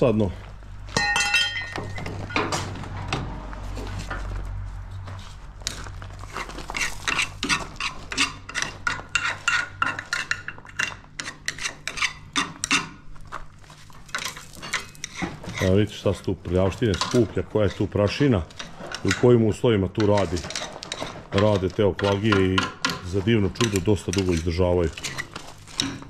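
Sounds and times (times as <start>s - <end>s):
ringing metal strike: 1.0s - 2.0s
steel tools clinking on metal: 1.0s - 2.5s.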